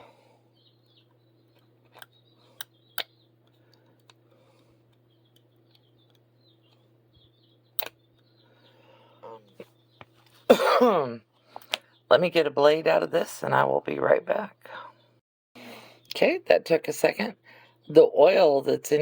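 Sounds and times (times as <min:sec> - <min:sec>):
faint bird chirps: 0:00.0 - 0:10.4
steady low hum: 0:00.0 - 0:18.7.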